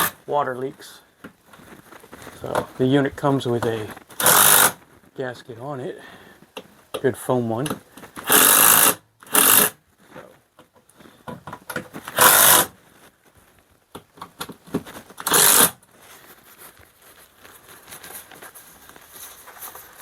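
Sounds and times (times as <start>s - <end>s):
cordless power driver bursts: 4.2s - 4.8s, 8.2s - 9.8s, 12.1s - 12.7s, 15.2s - 15.8s.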